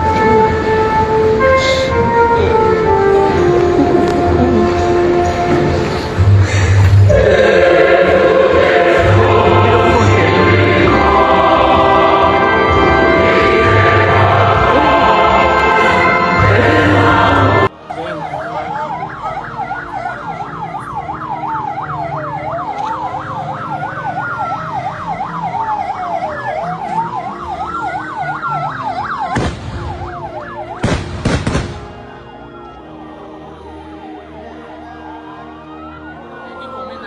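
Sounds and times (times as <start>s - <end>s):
wailing siren: 0.0s - 6.2s, 7.1s - 37.0s
choir music: 0.0s - 30.8s, 31.6s - 37.0s
yelping siren: 8.4s - 30.9s, 31.9s - 37.0s.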